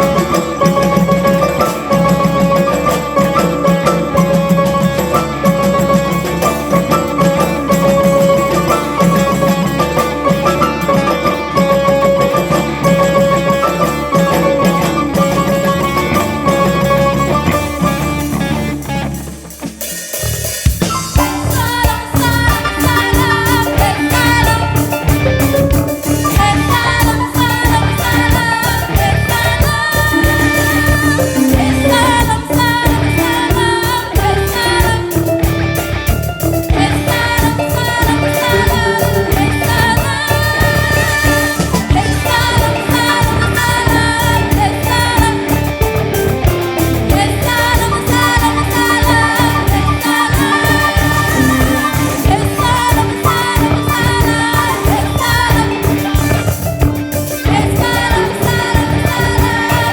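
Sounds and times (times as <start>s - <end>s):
fast dense drumming: 0.0s - 59.9s
held tone: 0.0s - 59.9s
melody line: 20.8s - 59.9s
voices singing: 20.8s - 59.9s.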